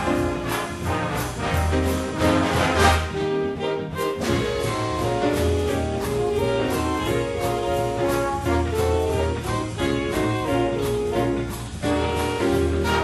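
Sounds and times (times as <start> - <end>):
brass band music with bass and beat: 0.0 - 13.0.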